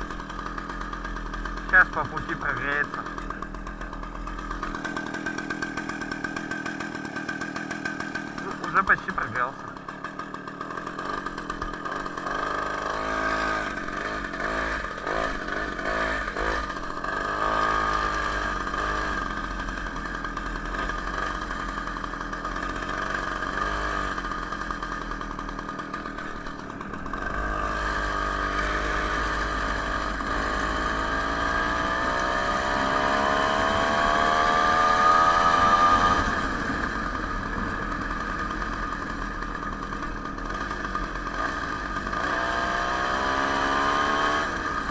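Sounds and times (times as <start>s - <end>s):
two-stroke moped engine running: 0.0s - 44.9s.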